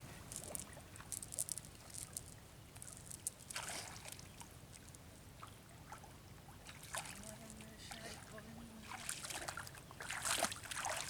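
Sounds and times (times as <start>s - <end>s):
water splashing and dripping: 8.8s - 11.0s.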